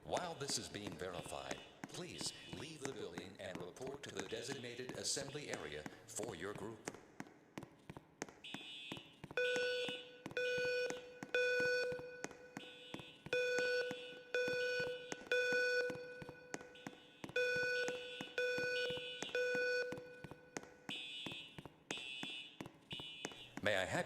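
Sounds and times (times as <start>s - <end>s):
fire alarm beeps: 0.5s - 2.9s, 4.1s - 5.6s, 8.4s - 23.6s.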